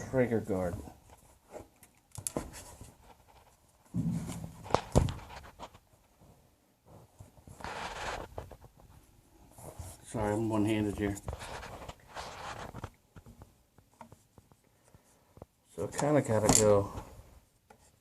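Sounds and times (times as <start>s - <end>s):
plastic grip scraping and rubbing: 0.7s - 5.9s, 7.0s - 9.0s, 9.6s - 15.5s.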